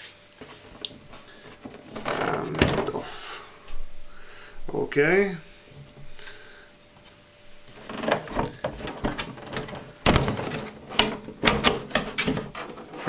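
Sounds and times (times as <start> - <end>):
plastic parts knocking and clacking: 7.8 - 13.0.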